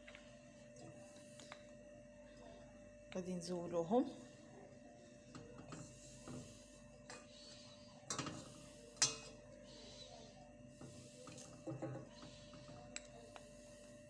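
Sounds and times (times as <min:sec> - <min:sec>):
utensil clinking against pot: 0:09.0 - 0:09.3.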